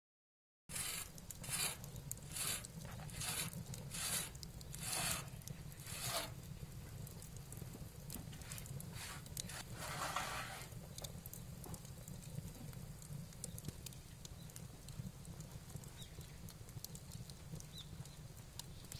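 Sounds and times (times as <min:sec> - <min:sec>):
rhythmic scraping strokes: 0:00.7 - 0:06.4, 0:08.4 - 0:10.8.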